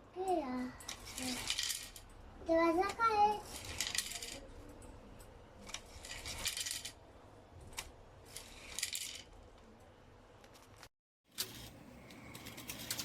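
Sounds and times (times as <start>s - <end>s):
small metal objects clinking: 3.5s - 4.5s.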